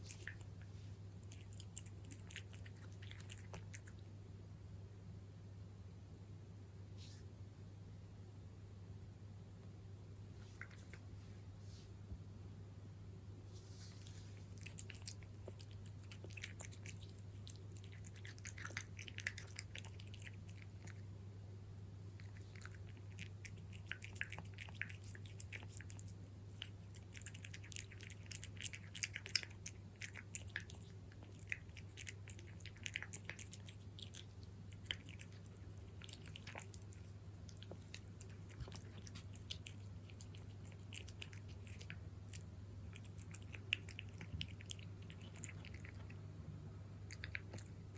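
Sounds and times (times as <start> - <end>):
cat chewing crunchy food: 0.0 - 4.1, 10.3 - 11.2, 13.6 - 21.2, 22.0 - 46.3, 46.9 - 47.9
low steady hum: 0.0 - 47.9.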